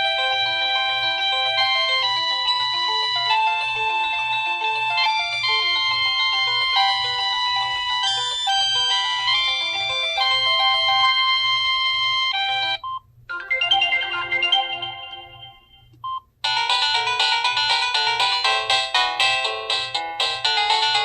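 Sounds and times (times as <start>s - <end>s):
polyphonic phone ringtones: 0.0s - 21.0s.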